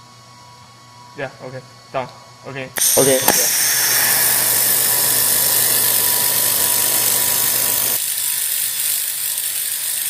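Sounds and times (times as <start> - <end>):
laser welder hum and hiss: 2.8 - 10.0.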